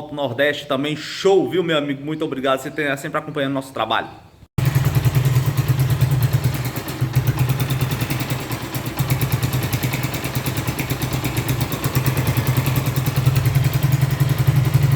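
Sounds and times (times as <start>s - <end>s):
motorcycle engine idling: 4.6s - 14.9s.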